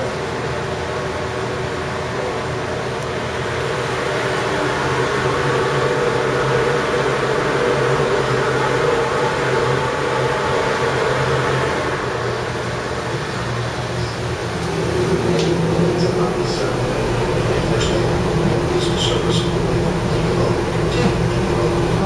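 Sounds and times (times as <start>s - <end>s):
ventilation fan humming: 0.0s - 22.0s.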